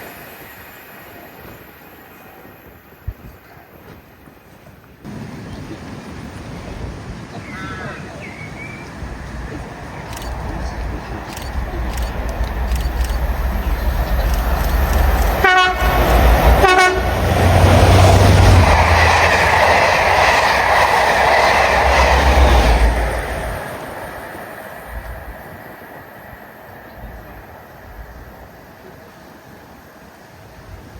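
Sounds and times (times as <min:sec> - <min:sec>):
train rushing past: 0:08.4 - 0:30.9
train horn blasts: 0:15.0 - 0:18.0.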